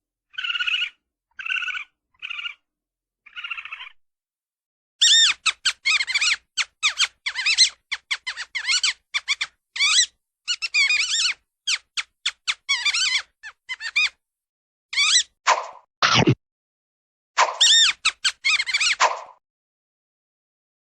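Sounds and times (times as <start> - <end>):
cartoon squirrel squeaks: 0.3 - 4.0, 5.0 - 14.2, 14.9 - 16.4, 17.4 - 19.4.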